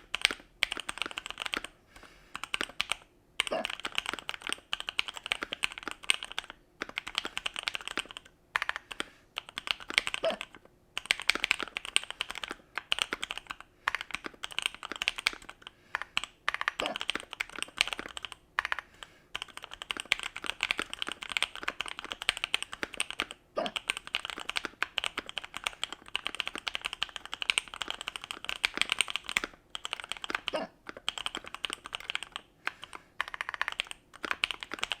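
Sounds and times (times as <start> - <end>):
fast typing on keyboard: 0.0 - 35.0
person hiccuping: 10.2 - 10.4, 16.8 - 17.0, 23.6 - 23.8, 30.5 - 30.8.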